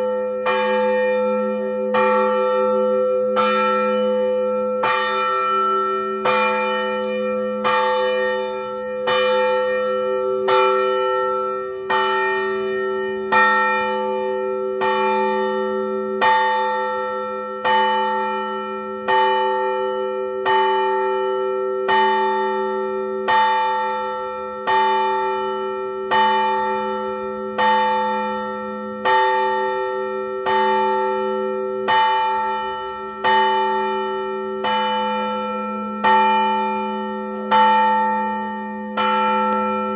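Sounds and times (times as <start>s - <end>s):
church bells ringing: 0.0s - 39.9s
low humming bell tone: 28.3s - 29.3s.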